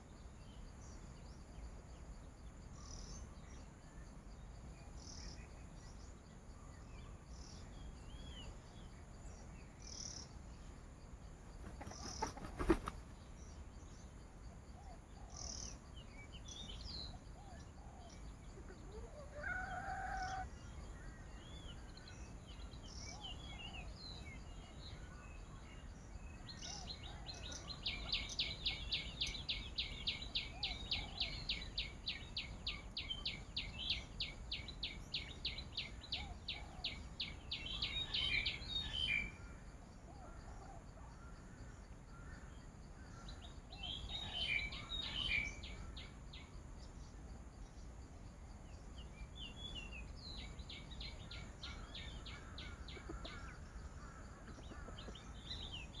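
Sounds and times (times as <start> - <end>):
outdoor background noise: 0.0 - 56.0
bird chirping rapidly: 11.6 - 13.1.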